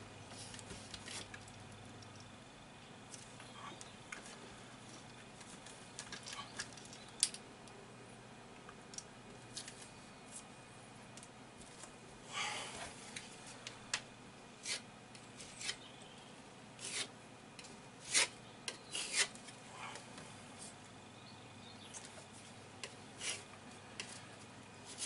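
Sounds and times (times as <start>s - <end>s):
filler knife scraping plaster: 14.6s - 14.8s, 15.4s - 15.8s, 16.8s - 17.1s, 18.0s - 19.4s, 23.2s - 24.2s.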